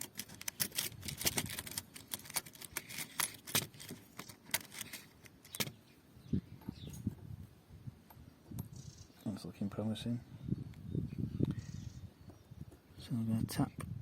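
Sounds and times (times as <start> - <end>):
metal pins clinking: 0.0 - 5.8.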